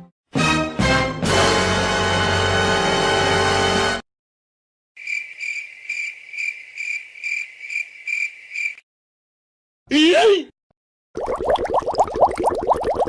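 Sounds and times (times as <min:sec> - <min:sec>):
music: 0:00.0 - 0:04.0
cricket chirping: 0:05.0 - 0:08.8.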